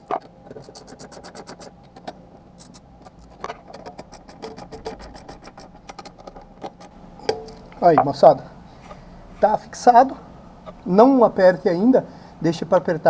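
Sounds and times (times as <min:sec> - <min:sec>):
tool clicking and scraping on bolts: 0:00.0 - 0:07.8.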